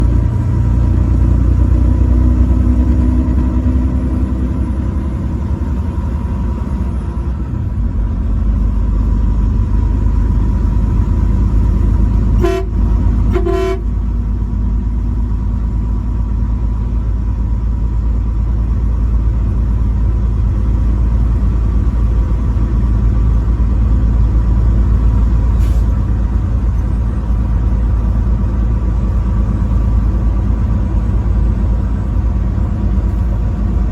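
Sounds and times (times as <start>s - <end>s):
road noise: 0.0s - 33.9s
truck engine rumble: 0.0s - 33.9s
truck horn toots: 12.3s - 14.1s.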